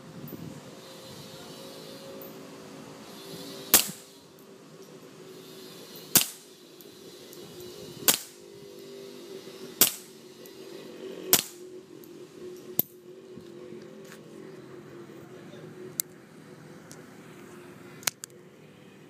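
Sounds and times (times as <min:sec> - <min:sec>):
suppressed gunshots: 0:03.7 - 0:04.1, 0:06.1 - 0:06.5, 0:09.8 - 0:10.1.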